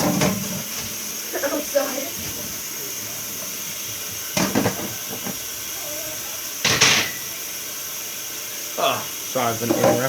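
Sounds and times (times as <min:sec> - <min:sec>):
dishes clattering: 0:00.0 - 0:00.6, 0:04.4 - 0:05.4, 0:06.6 - 0:07.3, 0:09.7 - 0:10.0
tap water running: 0:00.0 - 0:10.0.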